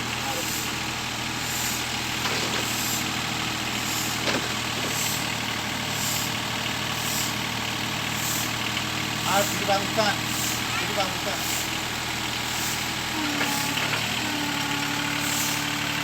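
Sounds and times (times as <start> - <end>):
backhoe engine running: 0.0 - 16.0.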